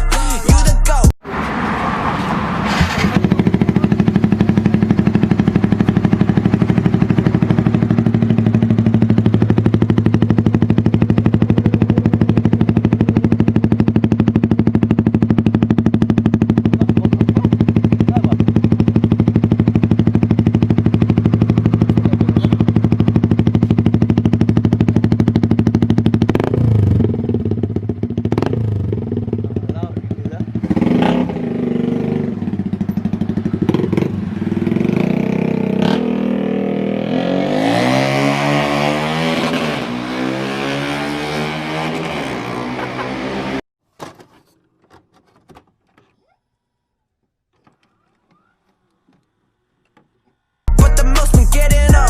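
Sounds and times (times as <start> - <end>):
motorcycle engine idling: 3.2 - 30.8, 31.4 - 35.6.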